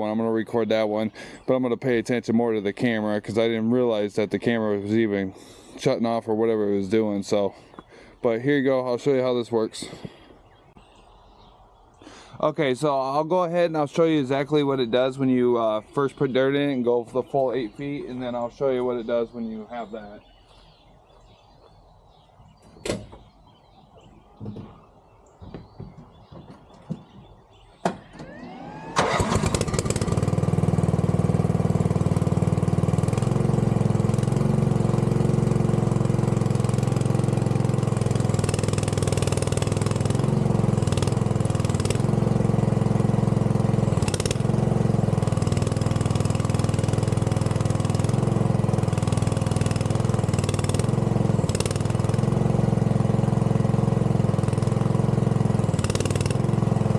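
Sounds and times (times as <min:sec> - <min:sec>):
excavator engine running: 0:28.2 - 0:56.9.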